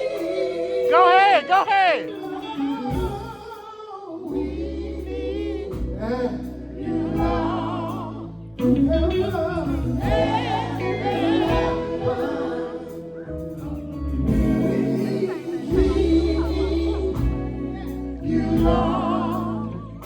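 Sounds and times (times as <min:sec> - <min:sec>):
gospel choir singing: 0:00.0 - 0:20.0
sustained bass notes: 0:04.4 - 0:20.0.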